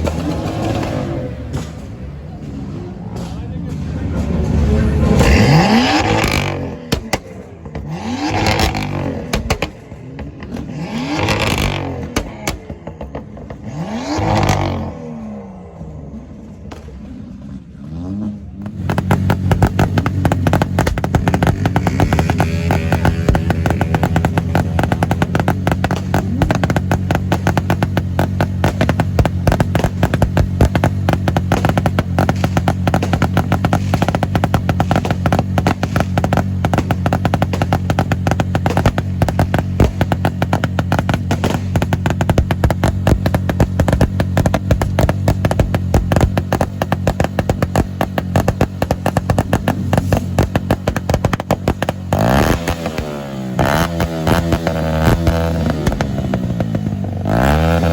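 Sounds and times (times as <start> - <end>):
car engine revving: 0.0 - 57.9.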